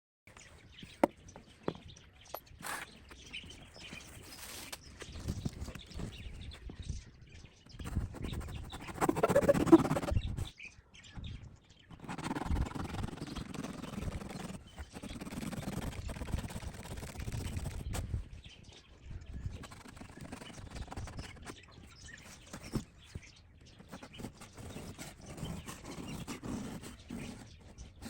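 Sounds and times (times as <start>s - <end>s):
birds calling and chirping: 0.3s - 28.0s.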